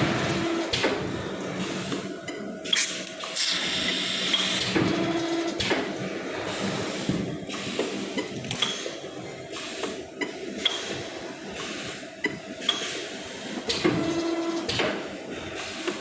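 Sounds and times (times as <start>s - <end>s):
machine hum: 0.0s - 6.6s.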